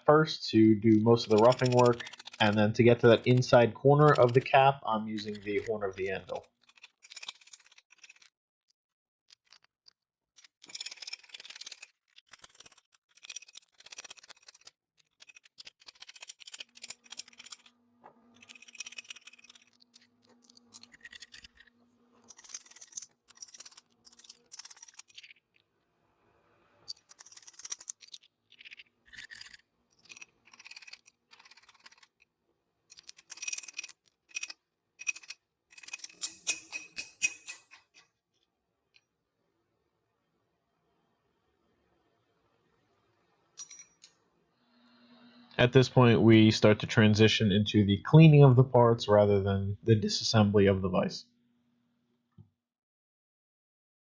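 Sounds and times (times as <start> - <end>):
scratchy scraping: 0.5 - 8.3, 10.4 - 17.7, 18.3 - 25.6, 26.9 - 32.2, 32.9 - 38.1.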